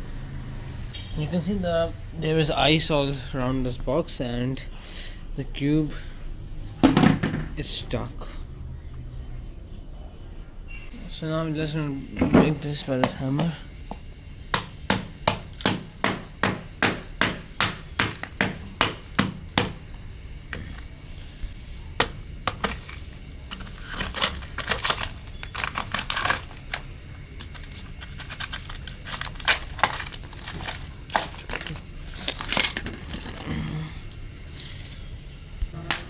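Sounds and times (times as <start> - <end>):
ice cracking and crunching: 22.0 - 33.6.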